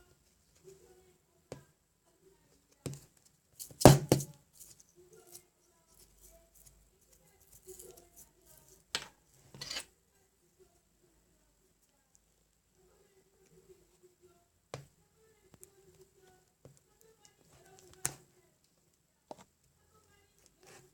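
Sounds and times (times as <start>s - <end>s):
small objects clicking and knocking: 2.9s - 9.9s.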